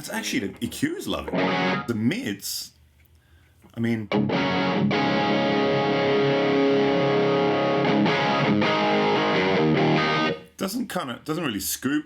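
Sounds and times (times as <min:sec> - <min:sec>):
electric guitar chord ringing: 0:01.3 - 0:01.9, 0:04.1 - 0:10.4.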